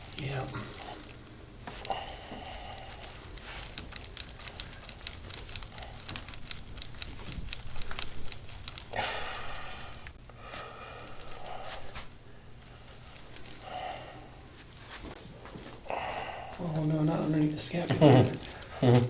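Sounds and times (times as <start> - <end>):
rustling and crinkling handling: 0.0 - 8.9, 14.5 - 15.8, 16.6 - 19.0
breathy rushes: 8.9 - 14.5, 15.8 - 16.6.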